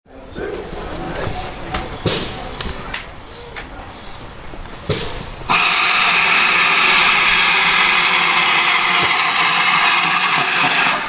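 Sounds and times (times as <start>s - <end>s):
steam locomotive hissing: 4.0s - 11.0s.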